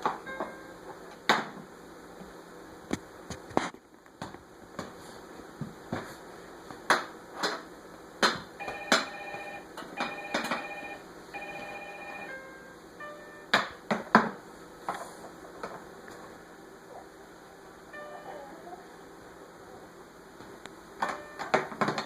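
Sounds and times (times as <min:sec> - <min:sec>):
electronic toy beeping notes: 0:08.6 - 0:13.6, 0:21.0 - 0:21.6.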